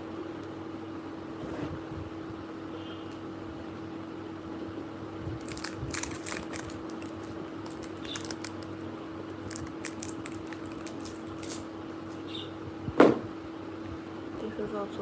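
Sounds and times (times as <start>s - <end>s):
plastic packaging crinkling: 5.3s - 11.7s.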